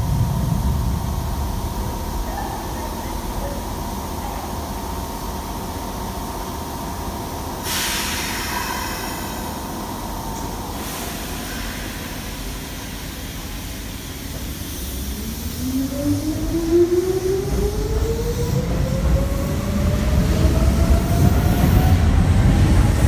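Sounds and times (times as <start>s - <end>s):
low rumble: 0.0s - 2.3s
train hiss: 0.0s - 17.0s.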